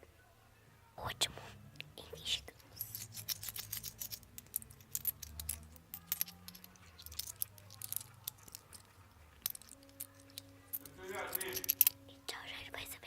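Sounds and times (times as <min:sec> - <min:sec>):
small hard objects clicking: 0:02.6 - 0:12.0.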